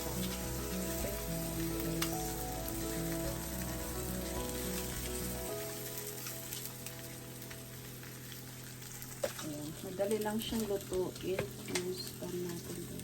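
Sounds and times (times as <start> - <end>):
background music of held notes: 0.0 - 7.3
meat sizzling in a frying pan: 0.0 - 13.0.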